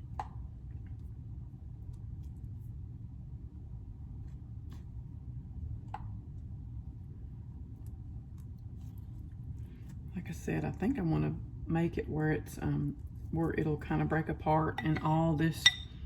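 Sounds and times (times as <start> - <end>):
low room rumble: 0.0 - 16.0.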